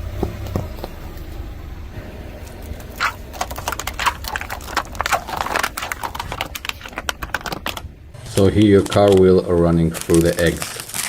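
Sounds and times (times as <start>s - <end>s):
low steady hum: 0.0s - 11.0s
tyre crushing brittle objects: 2.4s - 11.0s.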